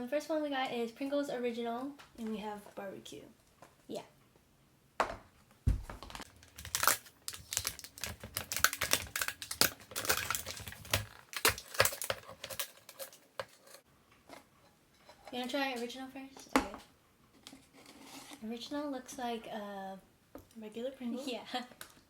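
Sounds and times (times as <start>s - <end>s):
dull thump: 5.0s - 6.2s
foil crinkling and tearing: 6.2s - 13.8s.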